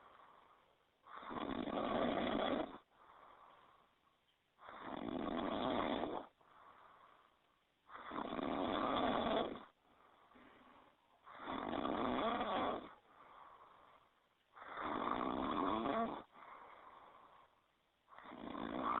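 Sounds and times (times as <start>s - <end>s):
animal breathing: 0.0s - 4.0s, 4.6s - 19.0s
polar bear snoring: 1.0s - 3.5s, 4.6s - 7.0s, 7.9s - 9.8s, 11.2s - 14.0s, 14.6s - 17.5s, 18.1s - 19.0s.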